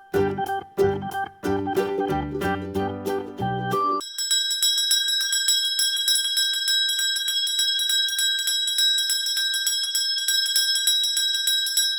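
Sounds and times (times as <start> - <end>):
alarm bell ringing: 3.4 - 11.9.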